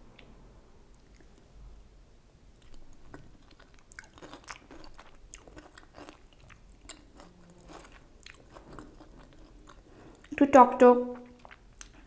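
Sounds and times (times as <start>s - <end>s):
person chewing crunchy salad: 2.6s - 10.4s, 11.2s - 12.0s.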